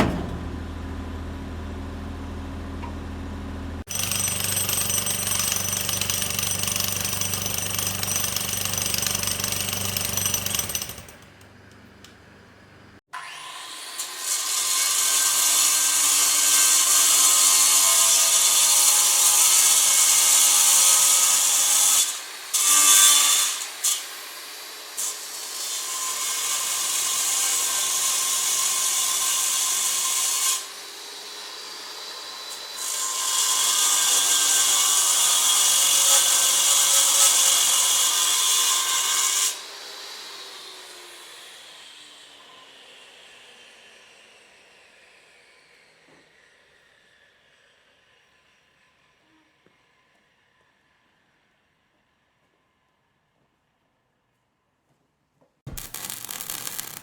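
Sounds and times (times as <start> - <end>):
power tool cutting wood: 3.9 - 11.2, 55.7 - 57.0.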